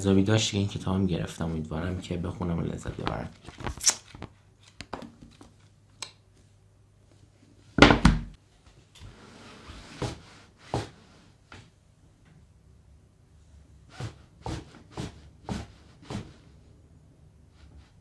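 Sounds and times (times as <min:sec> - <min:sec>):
rustle of books: 0:02.9 - 0:05.8.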